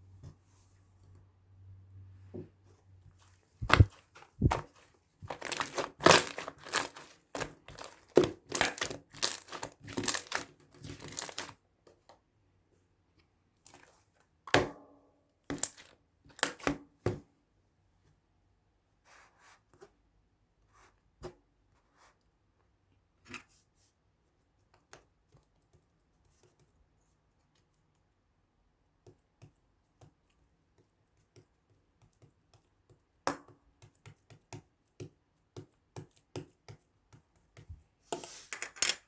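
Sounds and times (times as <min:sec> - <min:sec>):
thin material crumpling and tearing: 0:03.6 - 0:11.6.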